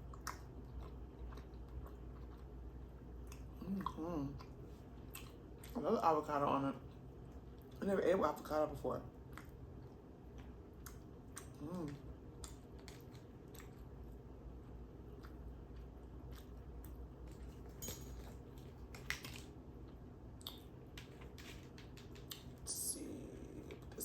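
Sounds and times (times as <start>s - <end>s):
soft chewing: 0.0s - 6.0s, 6.7s - 7.9s, 9.1s - 24.0s.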